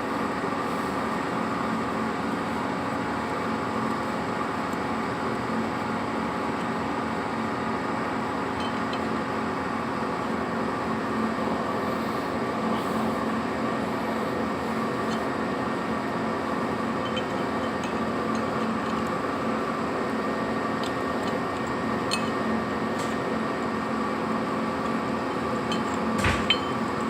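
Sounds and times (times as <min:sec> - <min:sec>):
lathe running: 0:13.7 - 0:27.0.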